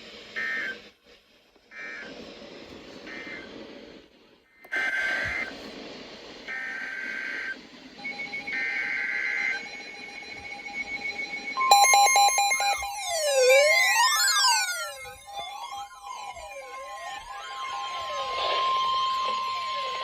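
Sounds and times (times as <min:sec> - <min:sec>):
radio hiss: 0:00.0 - 0:11.5, 0:12.5 - 0:20.0
screeching digital data bursts: 0:11.1 - 0:18.8
electronic alert tone: 0:11.6 - 0:17.5.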